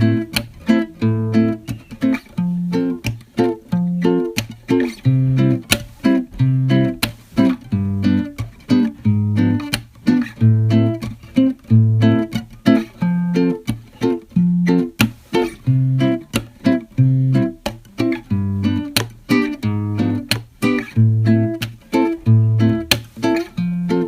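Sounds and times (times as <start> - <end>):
acoustic guitar strumming: 0.0 - 24.0.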